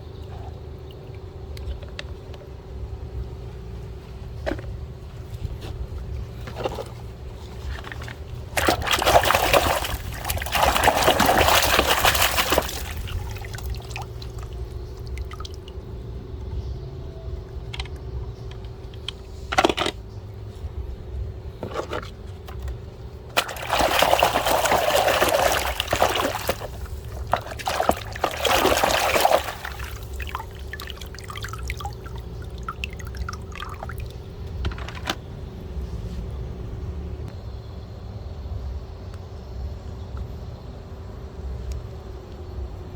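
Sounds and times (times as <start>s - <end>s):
steady low hum: 0.0s - 42.9s
water splashing over plastic toys: 7.6s - 15.8s, 23.3s - 34.2s.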